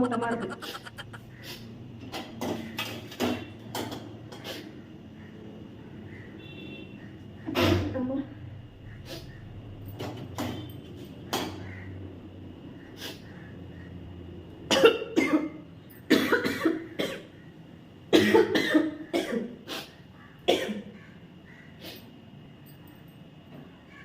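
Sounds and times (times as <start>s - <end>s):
person coughing: 0.0s - 1.2s, 14.7s - 17.2s, 18.2s - 19.5s, 20.5s - 20.9s.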